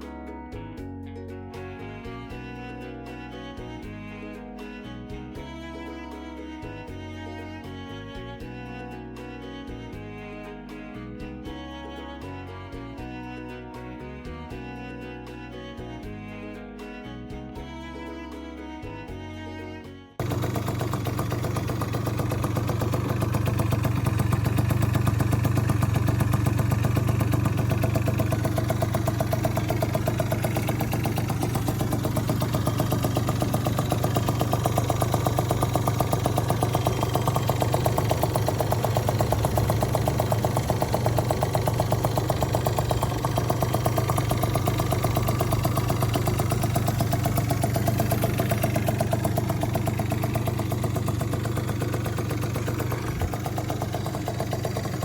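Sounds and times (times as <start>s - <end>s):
scooter engine idling: 20.2s - 55.0s.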